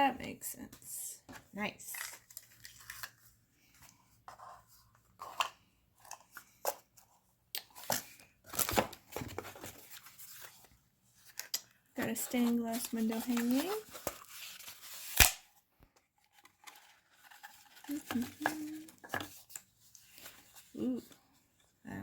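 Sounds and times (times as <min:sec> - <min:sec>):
packaging rustling and tearing: 0:08.5 - 0:15.4.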